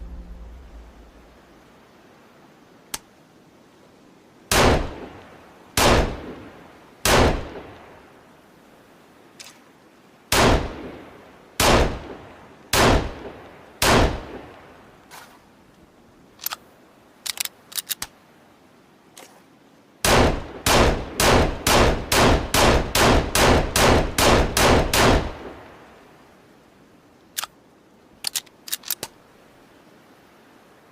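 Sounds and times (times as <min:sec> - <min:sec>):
metallic handling clicks: 0:17.2 - 0:18.1, 0:28.2 - 0:29.1.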